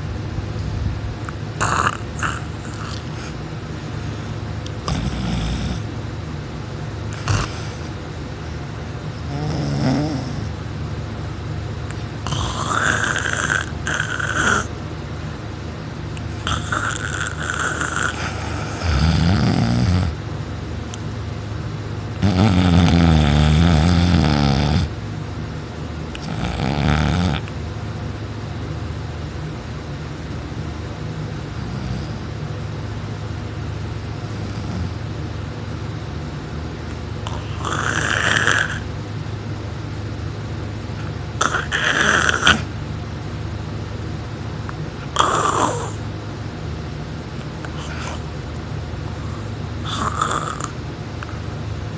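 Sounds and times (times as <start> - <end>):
person snoring loudly: 1.6 - 3.4, 4.8 - 5.9, 7.1 - 7.9, 9.2 - 10.5, 12.2 - 14.7, 16.3 - 20.2, 22.2 - 24.9, 26.2 - 27.5, 34.2 - 35.0, 37.3 - 38.9, 41.4 - 42.7, 45.2 - 46.0, 49.2 - 50.8.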